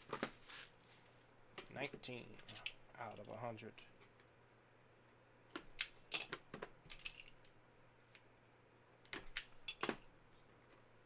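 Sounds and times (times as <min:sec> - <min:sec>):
card box packaging crackling: 0:00.0 - 0:01.1.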